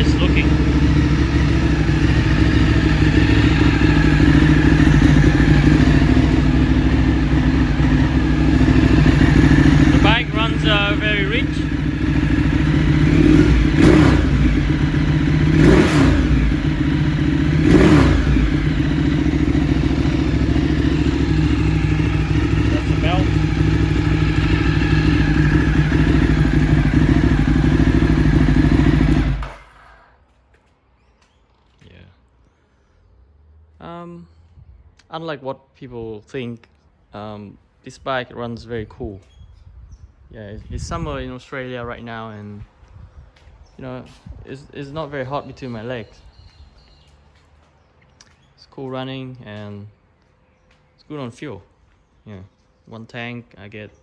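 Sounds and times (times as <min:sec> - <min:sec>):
motorcycle engine idling: 0:00.0 - 0:30.2.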